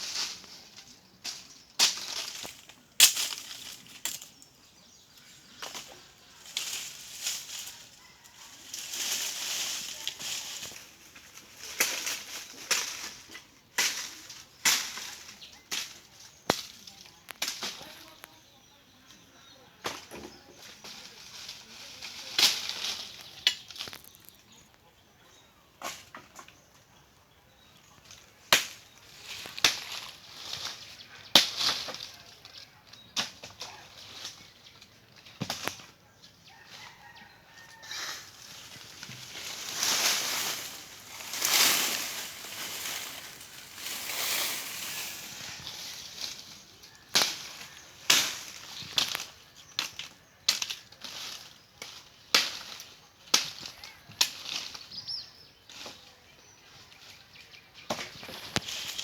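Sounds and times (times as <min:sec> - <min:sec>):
rustling hiss: 0:00.0 - 0:04.6, 0:05.2 - 0:18.4, 0:36.8 - 0:50.0, 0:58.2 - 0:59.0.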